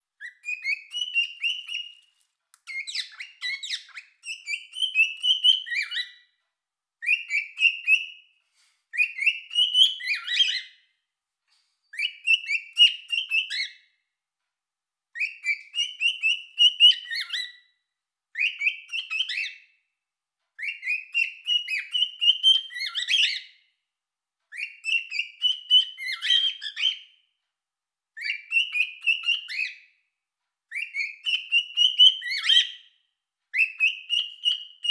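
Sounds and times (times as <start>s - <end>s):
cockatiel whistling: 0.2s - 2.0s, 2.7s - 6.2s, 7.0s - 8.2s, 9.0s - 10.8s, 11.9s - 13.8s, 15.2s - 17.6s, 18.4s - 19.6s, 20.6s - 23.5s, 24.5s - 27.1s, 28.2s - 29.8s, 30.7s - 32.8s, 33.5s - 34.9s.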